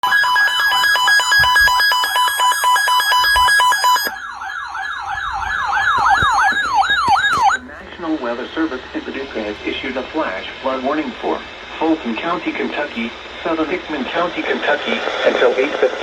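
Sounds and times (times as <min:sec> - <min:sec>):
electronic siren: 0:00.0 - 0:07.7.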